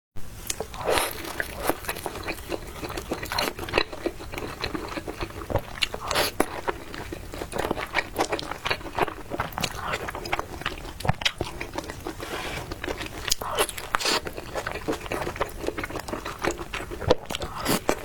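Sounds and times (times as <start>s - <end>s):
chewing and crunching: 0.5s - 18.0s.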